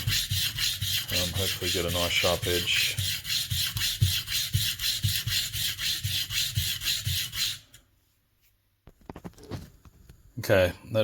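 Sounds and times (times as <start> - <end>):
blade scraping on sharpening stone: 0.0 - 7.8.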